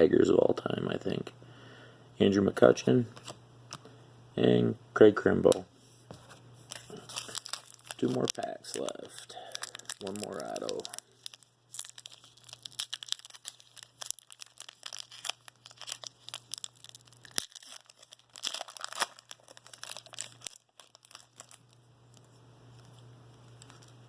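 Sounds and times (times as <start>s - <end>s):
foil wrapper tearing and crinkling: 6.7s - 22.9s, 23.5s - 24.0s.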